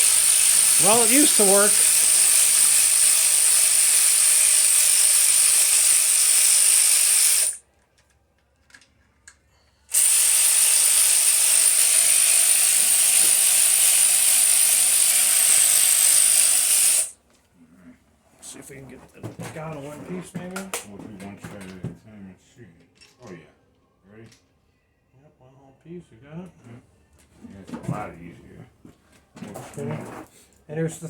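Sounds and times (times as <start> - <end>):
cordless power tool whining: 0.0 - 7.6, 9.9 - 17.1.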